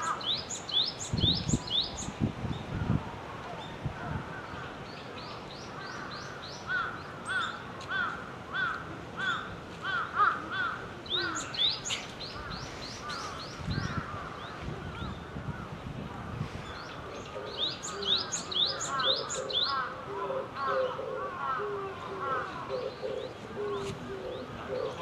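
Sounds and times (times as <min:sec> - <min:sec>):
songbird calling: 0:00.0 - 0:02.2, 0:10.2 - 0:15.3, 0:16.6 - 0:25.0.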